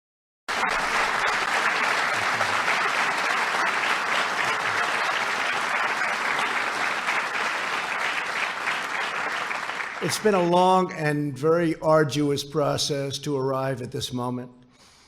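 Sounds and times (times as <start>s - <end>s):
large audience applauding: 0.5s - 10.9s.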